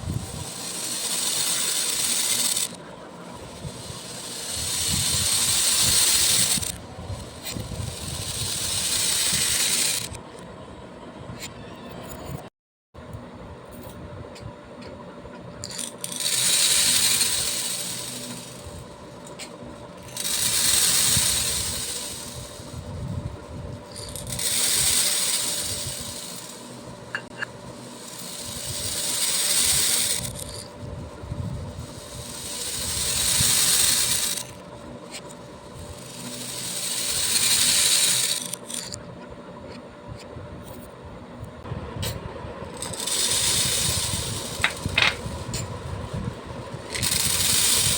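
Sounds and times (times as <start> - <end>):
beads poured rattling: 0.0 - 10.2, 15.6 - 22.8, 23.9 - 30.7, 31.7 - 39.0, 42.8 - 45.6, 46.9 - 47.9.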